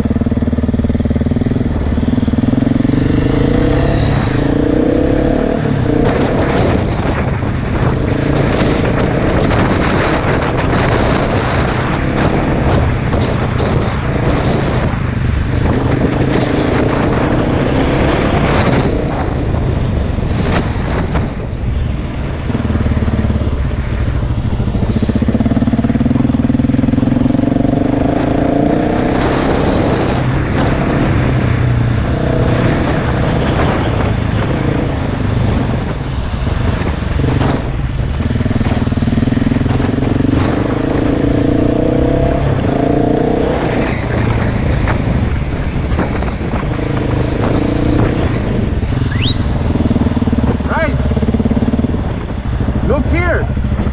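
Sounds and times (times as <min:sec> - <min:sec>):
dirt bike engine revving: 0:00.0 - 0:07.2, 0:22.5 - 0:31.1, 0:46.2 - 0:53.9.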